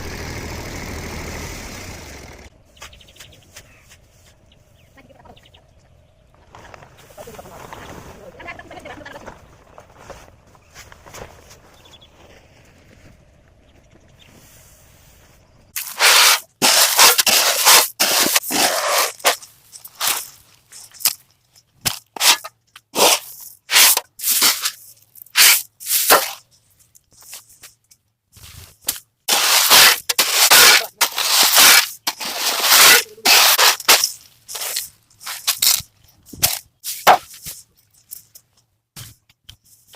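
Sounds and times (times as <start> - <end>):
steady scraping: 14.3 - 21.0, 29.3 - 35.8
dry maize husks crunching and tearing: 32.7 - 36.6.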